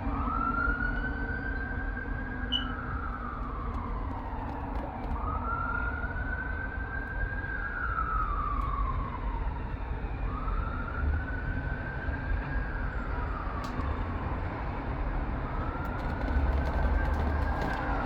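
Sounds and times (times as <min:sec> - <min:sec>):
emergency vehicle siren wailing: 0:00.0 - 0:16.3
road traffic rumble: 0:12.6 - 0:18.0.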